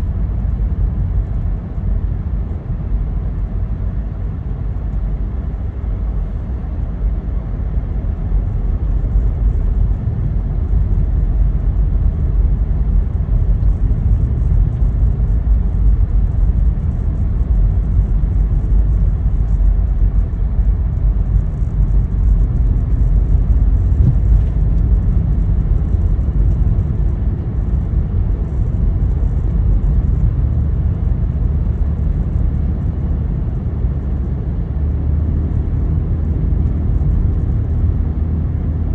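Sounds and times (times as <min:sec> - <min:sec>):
car road and engine rumble: 0:00.0 - 0:38.9.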